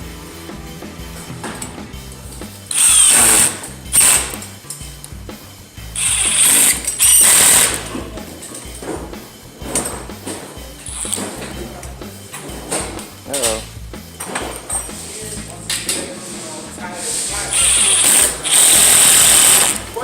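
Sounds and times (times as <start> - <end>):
cordless impact driver driving screws: 2.7 - 4.5, 6.0 - 8.0, 10.9 - 11.4, 17.5 - 20.0.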